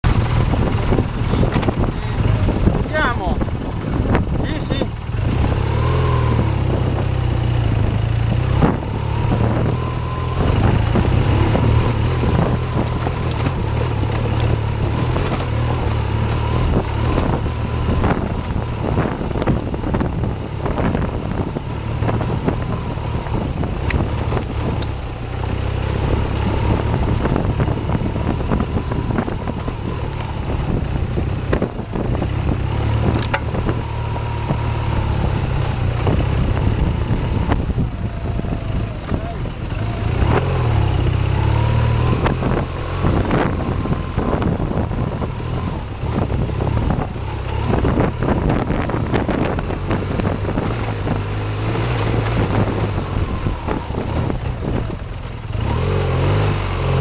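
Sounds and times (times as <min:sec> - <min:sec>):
motorcycle engine running: 0:00.0 - 0:57.0
sharp knocks and clicks: 0:33.1 - 0:33.8.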